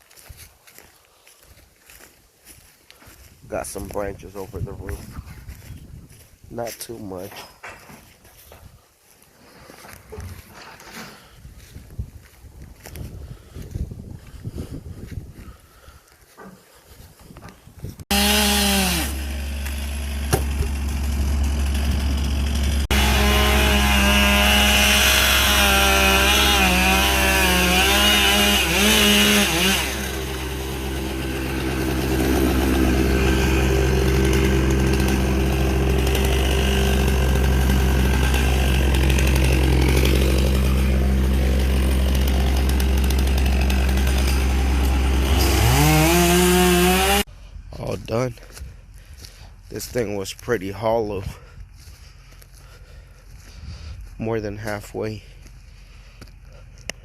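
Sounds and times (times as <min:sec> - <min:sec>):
chainsaw cutting wood: 0:18.0 - 0:47.3.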